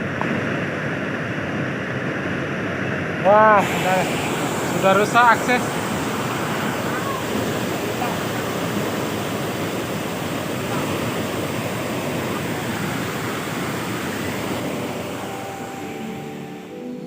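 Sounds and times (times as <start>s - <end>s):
waterfall rushing: 2.9s - 17.0s
faint music: 12.5s - 17.0s.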